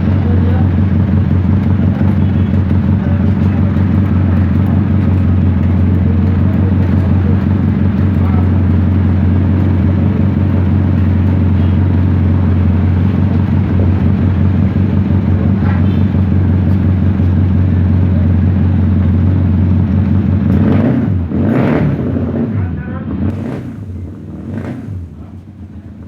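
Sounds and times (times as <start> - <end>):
motorcycle engine idling: 0.0 - 21.0, 22.6 - 26.0.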